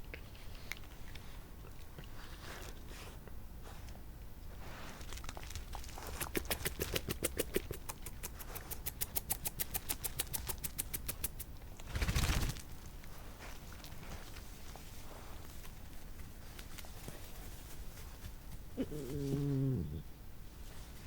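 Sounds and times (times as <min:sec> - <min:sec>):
teeth clicking through fur: 0:05.0 - 0:11.6.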